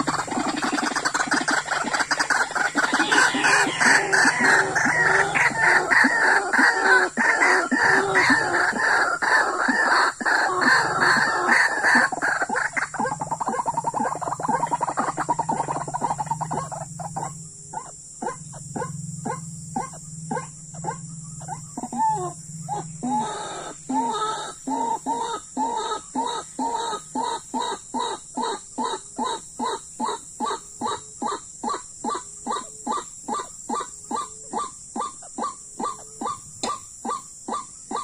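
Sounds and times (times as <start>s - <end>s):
waterhen calling: 0.0s - 17.3s
steady high hiss: 0.0s - 38.0s.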